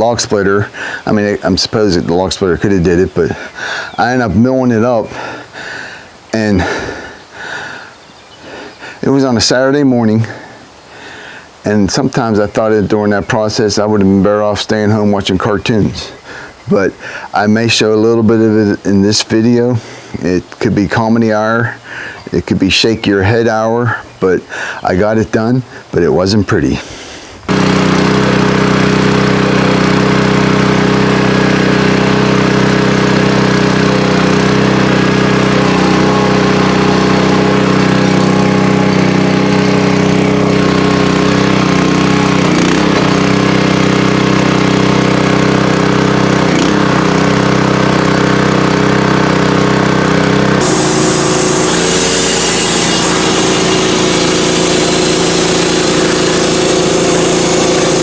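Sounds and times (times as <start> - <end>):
sawmill engine running: 0.0 - 7.8, 27.5 - 58.0
high hiss: 50.6 - 58.0.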